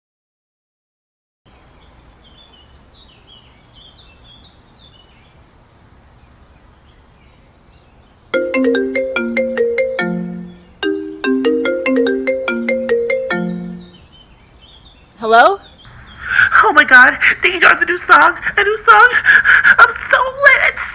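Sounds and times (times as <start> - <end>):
mobile phone ringtone: 8.4 - 14.0
faint bird chirps: 13.4 - 16.5.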